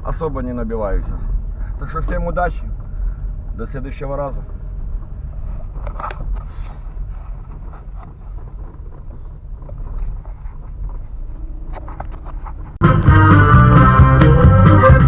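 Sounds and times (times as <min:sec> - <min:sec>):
wind buffeting microphone: 0:00.0 - 0:12.8
low vehicle engine rumble: 0:00.0 - 0:15.0.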